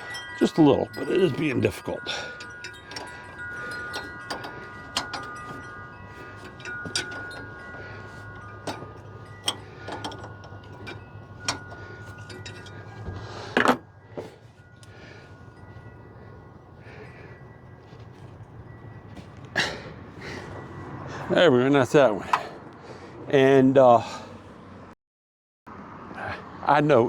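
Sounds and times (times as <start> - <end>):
wrench clinking on metal: 0.0 - 15.0.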